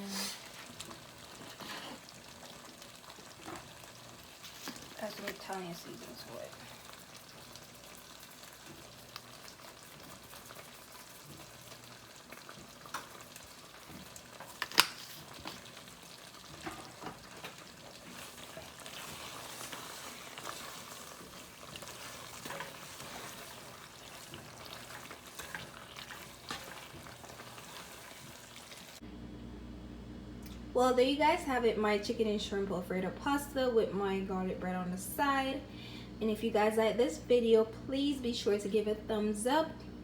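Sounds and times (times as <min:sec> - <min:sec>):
sauce sizzling and bubbling: 0:00.0 - 0:29.0.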